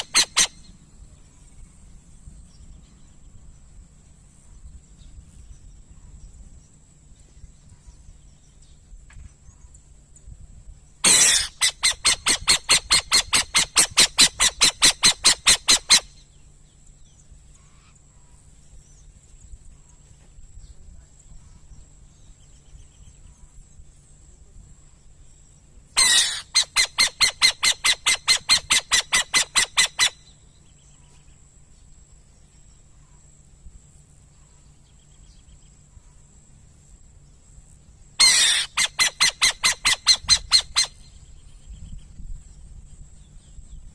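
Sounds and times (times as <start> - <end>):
owl harsh chattering: 0.0 - 0.7, 11.0 - 16.2, 26.0 - 30.3, 38.2 - 41.1.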